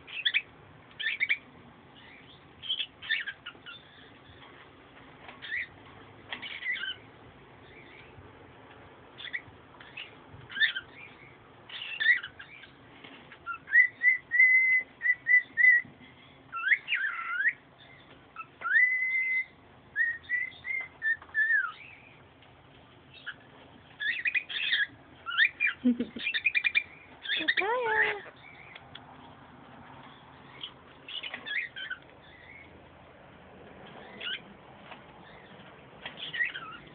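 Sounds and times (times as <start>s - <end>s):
pet bird whistling and chirping: 0.1s - 1.4s, 2.0s - 4.4s, 5.4s - 5.7s, 6.4s - 7.0s, 9.2s - 15.9s, 16.5s - 22.2s, 23.1s - 23.4s, 24.0s - 28.9s, 30.4s - 32.7s, 34.0s - 34.5s, 36.2s - 36.9s.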